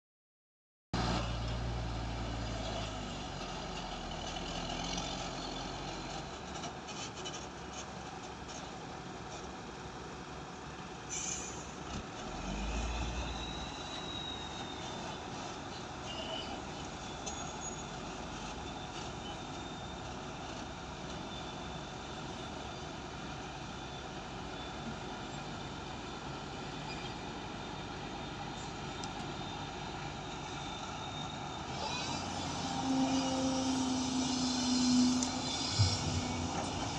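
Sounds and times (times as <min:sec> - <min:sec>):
short hiss: 0:11.1 - 0:11.8
heavy machinery running: 0:31.6 - 0:36.9.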